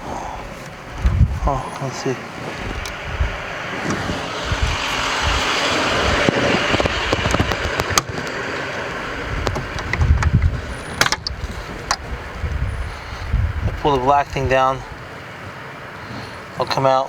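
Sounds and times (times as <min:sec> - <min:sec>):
plastic trim scraping and rustling: 0:03.7 - 0:08.8
sharp clicks and knocks: 0:06.2 - 0:08.8, 0:09.4 - 0:12.0.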